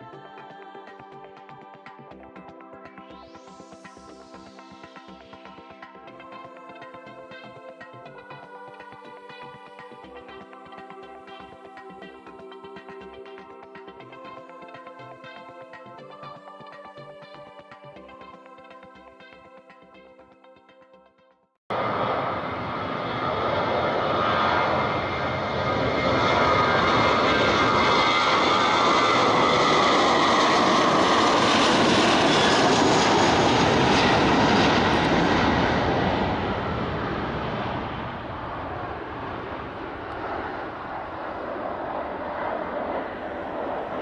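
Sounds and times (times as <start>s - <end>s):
airliner engines roaring: 21.7s - 44.0s.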